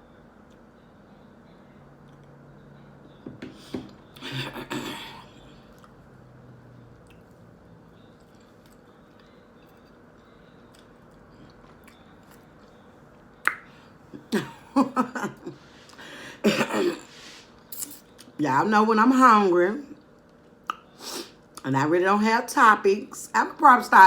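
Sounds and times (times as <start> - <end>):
chewing and mouth sounds: 5.7 - 6.0, 8.1 - 12.8.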